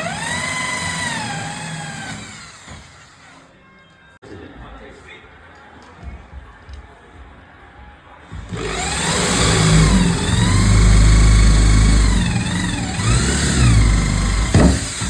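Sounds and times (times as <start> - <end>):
engine revving: 8.5 - 15.0.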